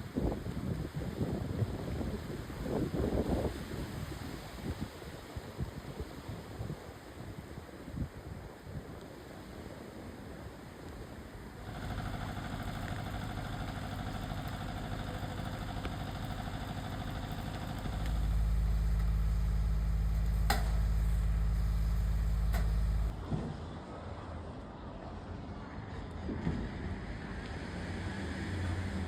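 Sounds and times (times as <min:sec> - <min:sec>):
sharp clicks: 0:11.6 - 0:19.3, 0:19.9 - 0:21.0
engine running: 0:11.6 - 0:23.4.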